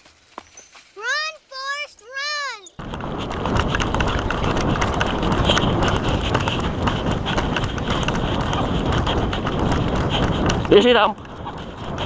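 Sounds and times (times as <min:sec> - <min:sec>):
hurried running footsteps: 0:00.0 - 0:12.0
gear rattling and clicking: 0:02.8 - 0:12.0
steady rush of noise: 0:02.8 - 0:12.0.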